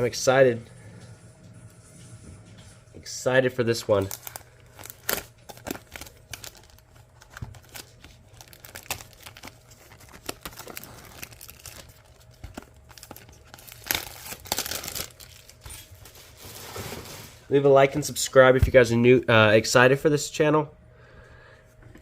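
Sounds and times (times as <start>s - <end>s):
shrink-wrap crinkling and tearing: 3.7s - 17.4s.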